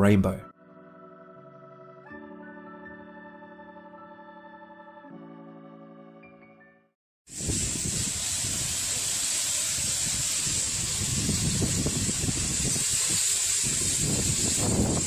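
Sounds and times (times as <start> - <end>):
music: 0.0 - 7.0
steady rushing hiss: 7.3 - 15.0.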